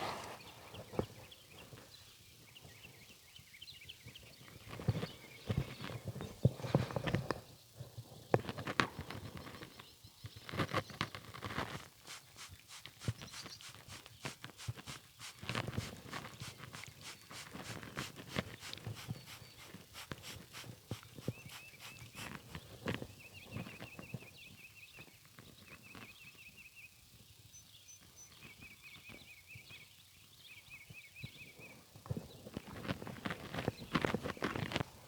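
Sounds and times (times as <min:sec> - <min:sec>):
horse hooves on hard ground: 0:10.5 - 0:24.1.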